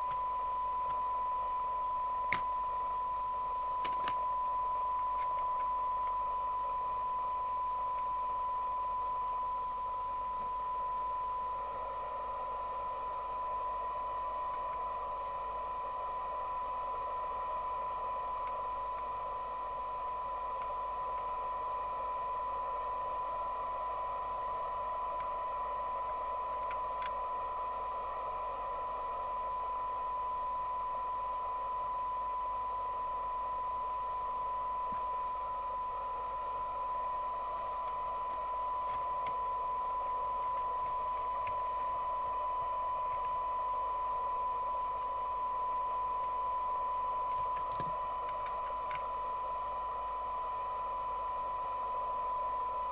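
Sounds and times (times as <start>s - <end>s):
steady test tone: 0.0s - 52.9s.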